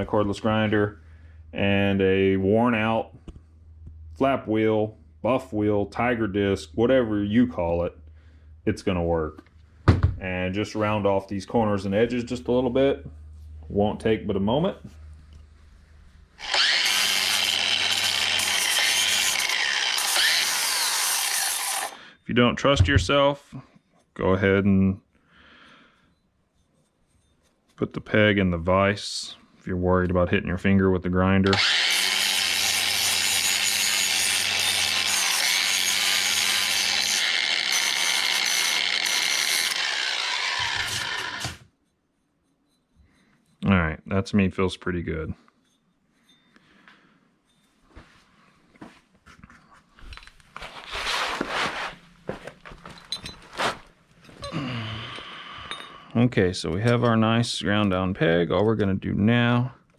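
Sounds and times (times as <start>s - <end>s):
angle grinder grinding metal: 16.4s - 22.0s, 31.4s - 41.7s.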